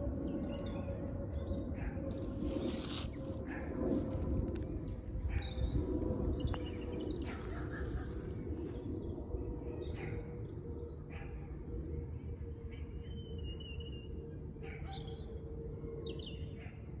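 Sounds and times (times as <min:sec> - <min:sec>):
steady low hum: 0:00.0 - 0:17.0
soft rustles: 0:02.1 - 0:03.4.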